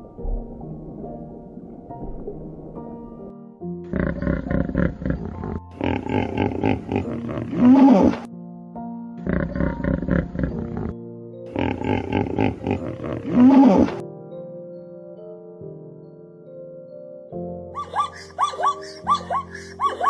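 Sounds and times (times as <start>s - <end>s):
background music with held notes: 0.0s - 20.0s
big cat roaring and growling: 3.9s - 8.3s, 9.2s - 14.0s.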